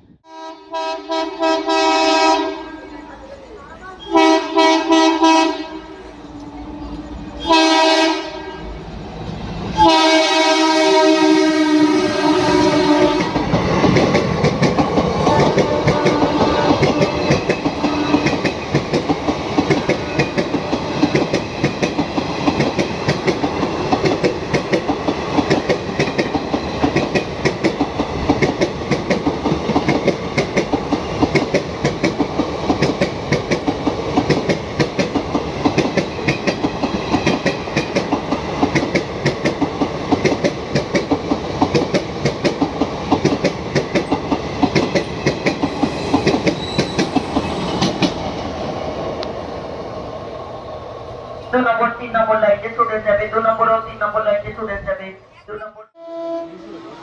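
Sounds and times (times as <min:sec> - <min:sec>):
train rumbling past: 0:00.0 - 0:57.0
train horn: 0:00.2 - 0:02.9, 0:04.1 - 0:08.8, 0:09.8 - 0:13.5, 0:15.2 - 0:18.5, 0:56.0 - 0:57.0
wheels clacking over rail joints: 0:12.8 - 0:49.3.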